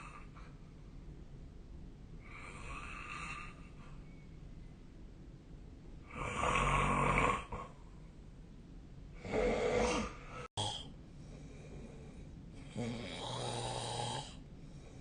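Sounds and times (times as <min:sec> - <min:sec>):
person snoring: 0:02.2 - 0:03.7, 0:06.1 - 0:07.6, 0:09.2 - 0:10.9, 0:12.6 - 0:14.4.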